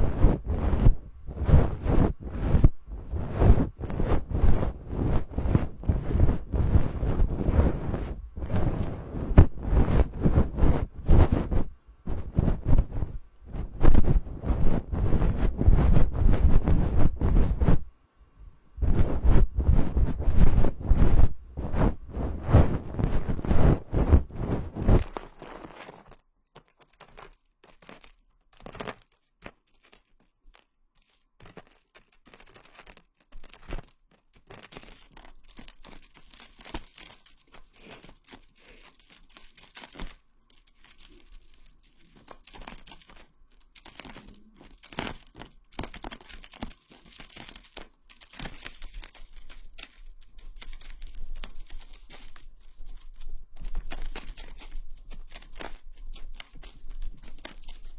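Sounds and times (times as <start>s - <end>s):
soft crinkling: 0.0s - 17.8s, 18.9s - 57.9s
scratching: 18.8s - 57.9s.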